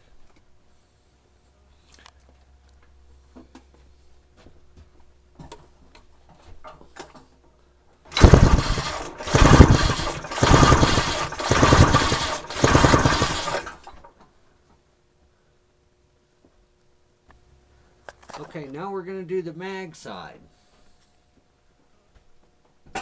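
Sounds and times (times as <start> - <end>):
engine cranking bursts: 8.1 - 14.1.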